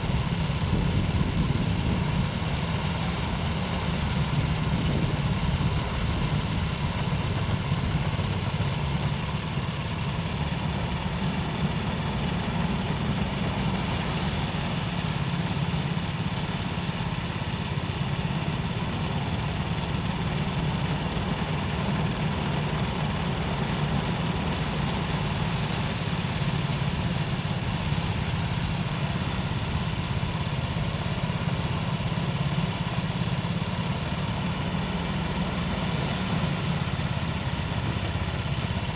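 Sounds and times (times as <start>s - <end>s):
threshing machine engine drone: 0.0s - 38.9s.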